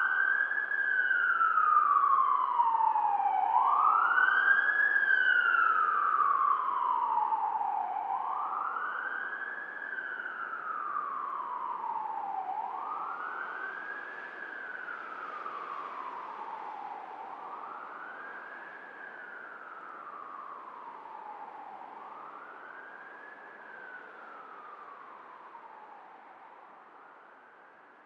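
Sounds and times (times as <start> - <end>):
emergency siren wailing: 0.0 - 26.2.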